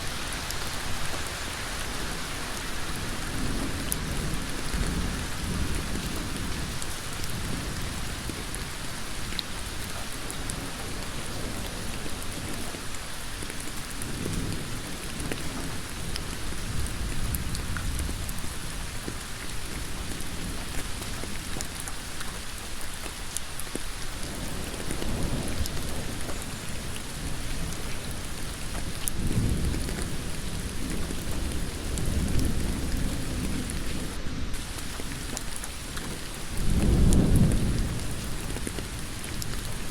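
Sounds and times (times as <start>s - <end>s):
heavy rain on road: 0.0s - 39.9s.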